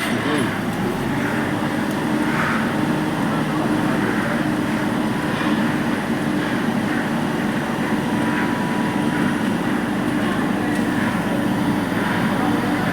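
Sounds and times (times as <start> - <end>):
machinery humming and rumbling: 0.0 - 12.9.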